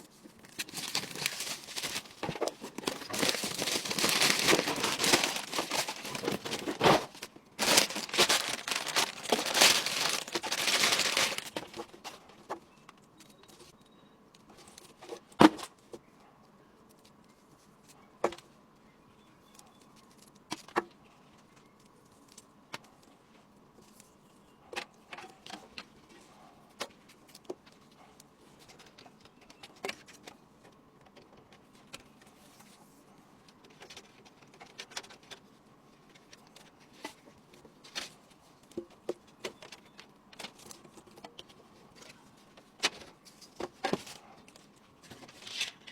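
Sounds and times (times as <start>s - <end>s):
packaging rustling and crinkling: 0.1s - 12.1s.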